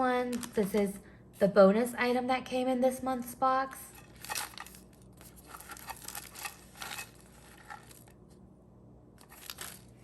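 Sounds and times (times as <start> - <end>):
plastic wrappers crinkling: 0.2 - 1.0, 4.0 - 8.2, 9.2 - 10.0.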